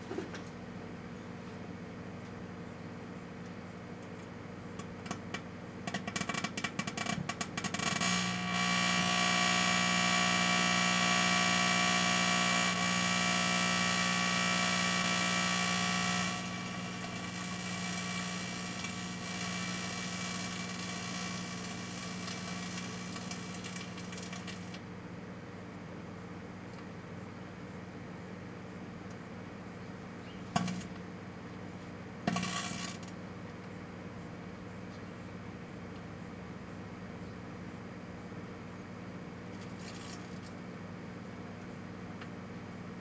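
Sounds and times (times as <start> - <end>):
microwave oven humming: 0.0 - 43.0
loud buzzing: 7.8 - 24.8
sharp crackles: 7.8 - 24.8.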